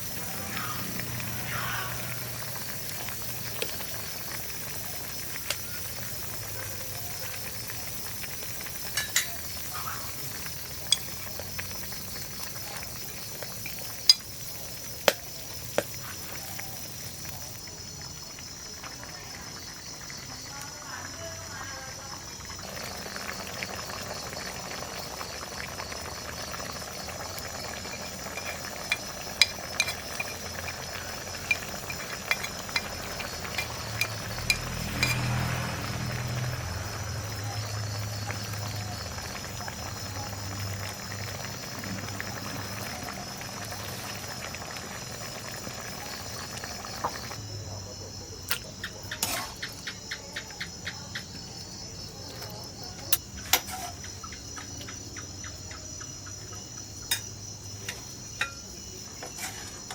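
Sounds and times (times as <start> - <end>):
crickets chirping: 0.0 - 59.9
food cooking in a pot: 0.0 - 59.9
utensil clinking: 8.8 - 12.2, 12.9 - 15.9, 27.1 - 35.4.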